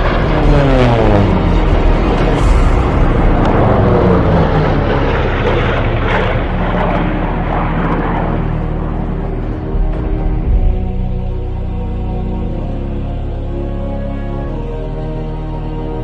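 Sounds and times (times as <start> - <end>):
propeller airplane flying past: 0.0 - 10.1.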